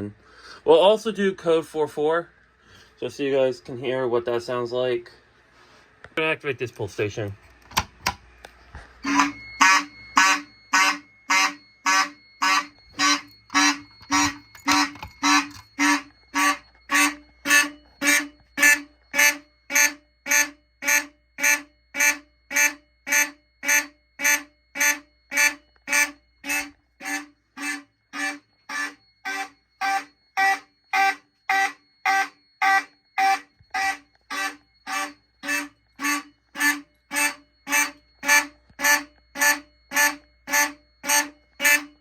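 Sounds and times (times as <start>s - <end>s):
faint steady high tone: 0.0s - 7.6s, 8.3s - 42.0s
fire alarm horn blasts: 8.7s - 42.0s.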